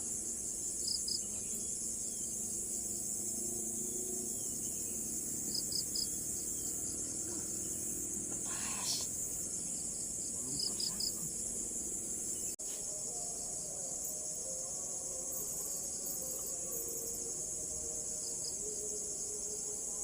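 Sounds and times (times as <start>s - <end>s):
insects chirping: 0.0s - 20.0s.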